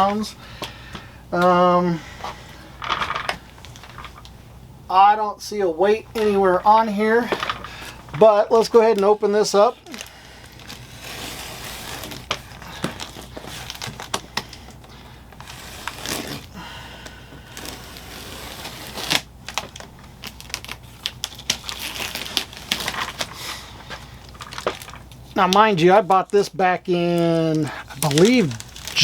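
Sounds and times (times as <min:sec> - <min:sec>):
cardboard box being opened: 0:09.9 - 0:14.7, 0:15.4 - 0:16.5.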